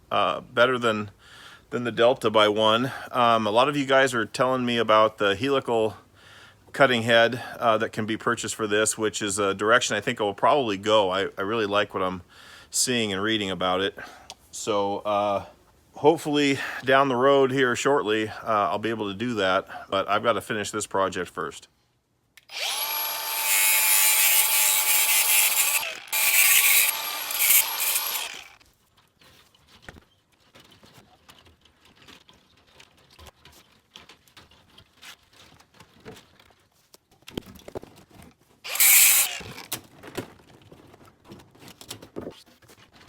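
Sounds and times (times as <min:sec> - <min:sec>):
thickness planer running: 0:22.5 - 0:28.6, 0:38.7 - 0:39.5.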